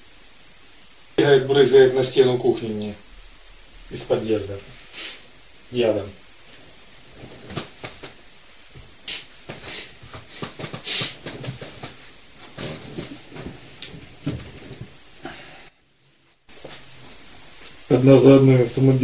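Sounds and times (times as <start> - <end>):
short hissy rustles: 0.2 - 15.2.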